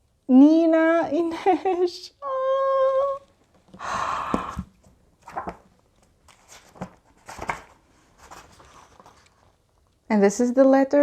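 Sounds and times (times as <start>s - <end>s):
paper and packaging rustling: 3.3s - 10.0s.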